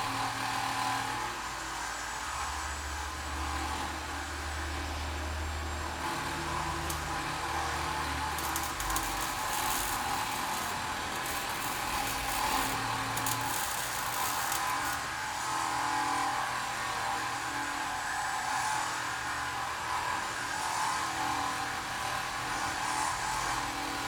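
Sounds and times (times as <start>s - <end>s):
machinery hum and hiss: 1.6s - 16.3s.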